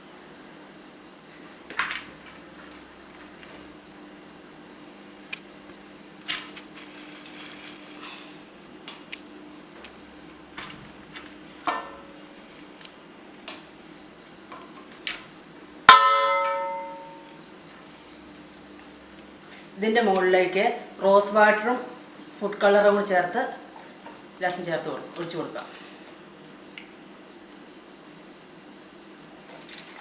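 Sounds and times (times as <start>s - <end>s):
loud ringing clang: 11.7s - 12.3s, 15.9s - 17.4s.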